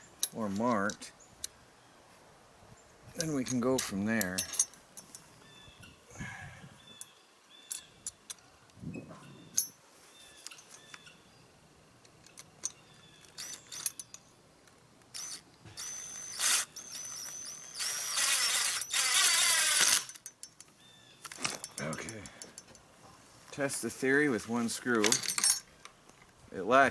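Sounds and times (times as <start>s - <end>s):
clicks and clinks of screws: 3.2s - 5.3s, 7.7s - 8.4s, 9.5s - 9.8s, 12.1s - 22.9s, 25.0s - 25.7s
power drill driving screw: 13.3s - 14.0s, 15.2s - 20.2s.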